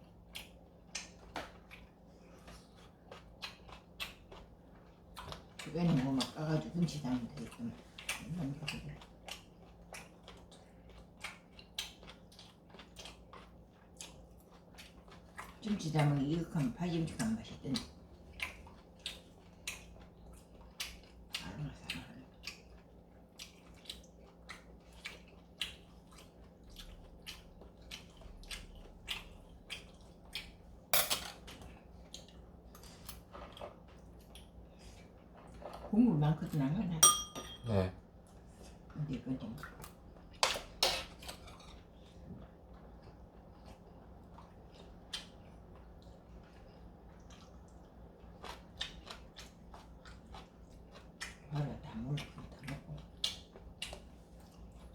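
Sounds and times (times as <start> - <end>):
faint steady hum: 0.0 - 54.9
soft eating clicks: 0.1 - 36.7, 39.5 - 54.9
chewing clicks: 2.5 - 4.5, 17.8 - 30.6, 52.2 - 54.9.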